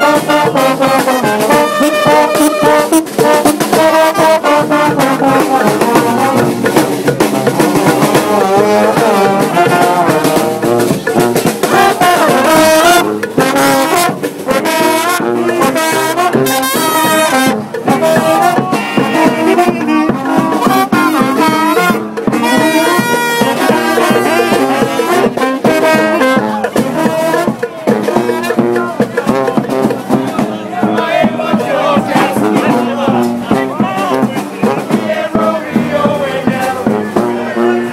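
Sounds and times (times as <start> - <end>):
marching brass band playing: 0.0 - 37.9.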